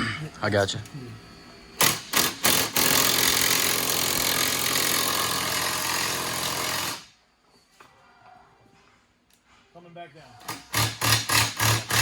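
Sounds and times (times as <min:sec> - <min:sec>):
power tool running: 0:01.8 - 0:07.1, 0:10.5 - 0:12.0.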